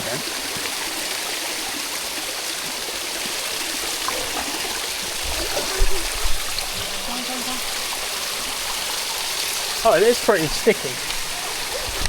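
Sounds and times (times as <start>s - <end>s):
water rushing down a waterfall: 0.0s - 12.0s.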